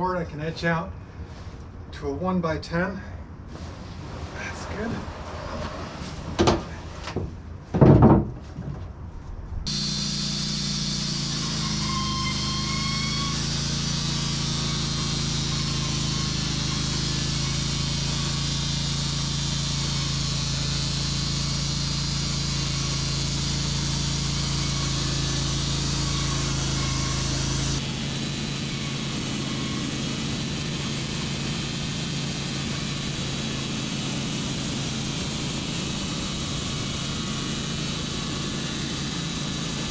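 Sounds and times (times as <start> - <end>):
sawmill engine running: 9.7 - 39.9.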